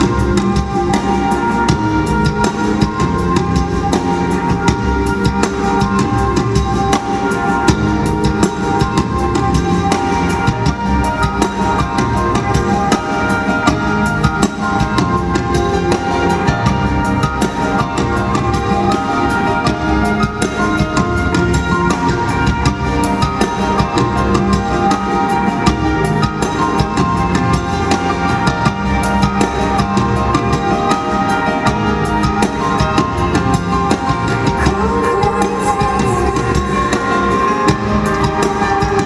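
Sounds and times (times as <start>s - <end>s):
drum kit beat: 0.0s - 39.0s
live band music: 0.0s - 39.0s.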